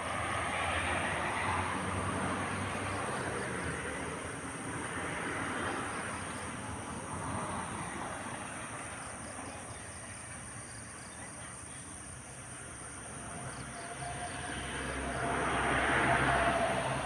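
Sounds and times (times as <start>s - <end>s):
insects trilling: 0.3s - 17.0s.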